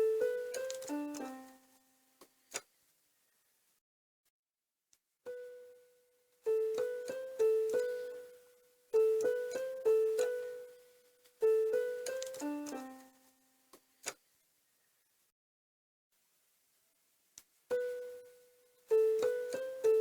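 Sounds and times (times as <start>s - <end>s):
piano-like keyboard melody: 0.0s - 1.8s, 5.3s - 13.3s, 17.7s - 20.0s.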